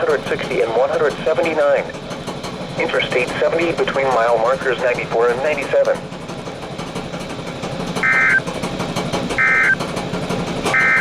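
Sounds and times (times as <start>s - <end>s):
steady background noise: 8.0s - 8.5s.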